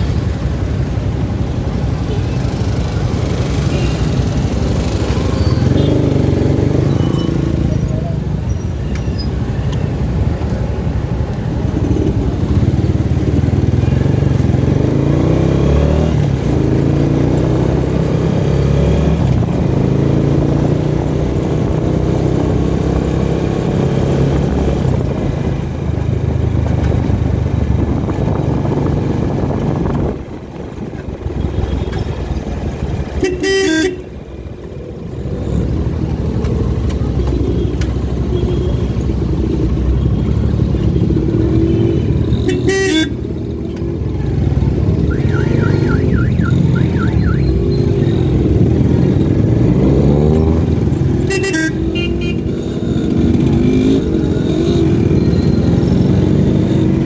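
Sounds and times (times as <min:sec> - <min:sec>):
vehicle engine and road noise: 0:00.0 - 0:57.0
car horn honk: 0:33.2 - 0:34.1, 0:41.7 - 0:43.2, 0:51.2 - 0:52.6.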